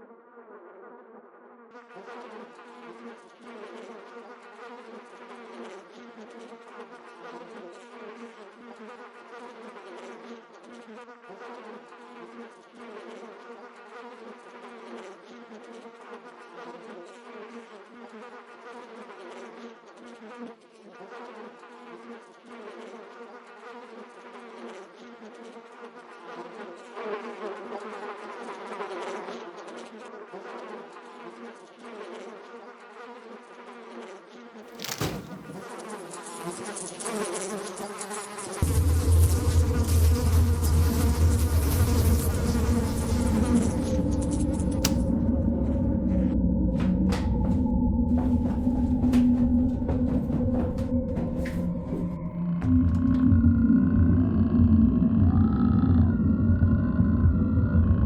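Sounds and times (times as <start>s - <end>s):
dense buzzing drone: 38.6s - 58.0s.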